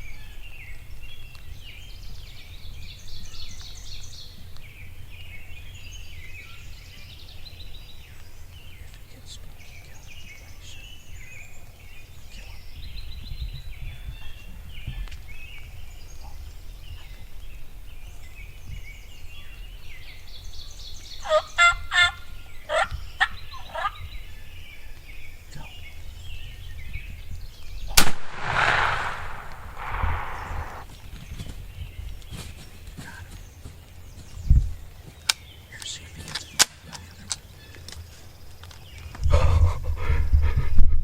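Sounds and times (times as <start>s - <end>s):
songbird chatter: 0.0s - 40.1s
shotgun blast: 28.0s - 30.8s
rush of noise: 28.1s - 30.8s.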